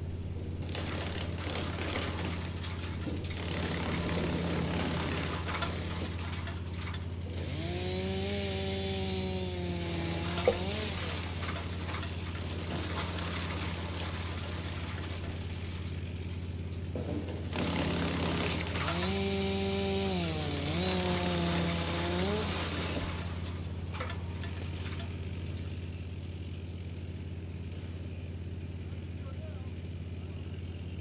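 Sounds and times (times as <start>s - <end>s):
wood chipper running: 0.0s - 31.0s.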